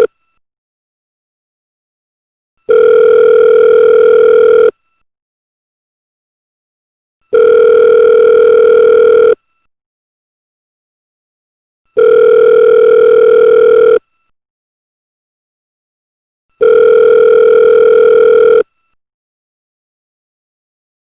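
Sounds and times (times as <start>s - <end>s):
telephone ringing tone beeps: 2.7s - 4.8s, 7.3s - 9.4s, 12.0s - 14.0s, 16.6s - 18.7s.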